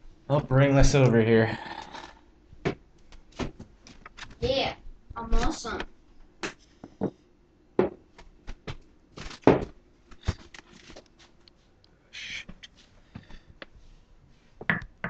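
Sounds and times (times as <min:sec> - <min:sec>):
objects knocking and clunking: 0:06.4 - 0:07.2, 0:07.8 - 0:10.8, 0:14.6 - 0:15.0.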